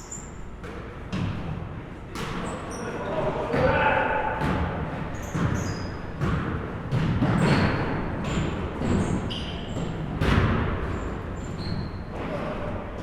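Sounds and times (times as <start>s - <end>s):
shoe squeaks: 0.0s - 0.6s, 2.4s - 3.2s, 5.1s - 6.2s, 7.4s - 10.0s, 10.9s - 12.4s
basketball bouncing on floor: 3.5s - 11.9s.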